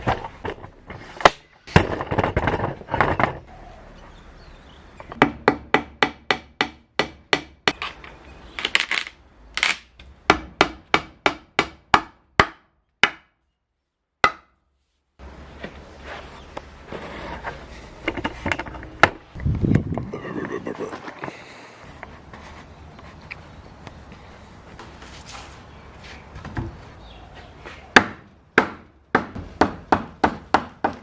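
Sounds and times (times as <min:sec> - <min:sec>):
hammer striking timber: 0:05.2 - 0:07.8, 0:10.2 - 0:13.4, 0:14.2 - 0:14.6, 0:28.0 - 0:31.0.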